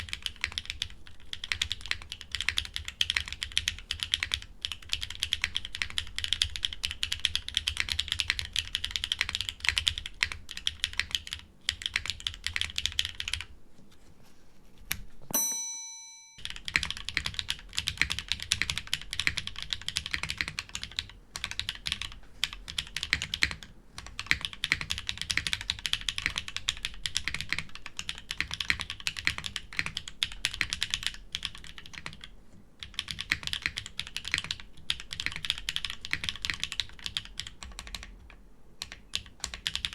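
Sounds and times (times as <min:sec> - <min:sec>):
fast typing on mechanical keyboard: 0:00.0 - 0:13.5, 0:16.4 - 0:39.9
ringing ding: 0:15.3 - 0:16.5.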